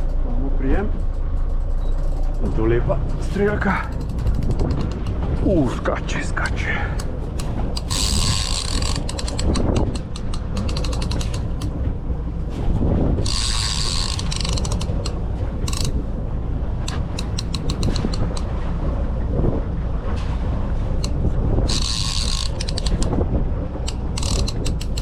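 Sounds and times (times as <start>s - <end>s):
fishing reel clicking: 7.0s - 11.7s, 13.2s - 16.0s, 16.9s - 18.5s, 21.0s - 23.1s, 23.9s - 25.0s.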